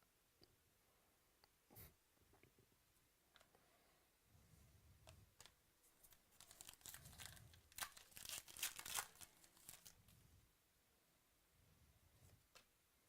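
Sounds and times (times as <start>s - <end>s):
card packaging rustling and crinkling: 5.3s - 10.0s.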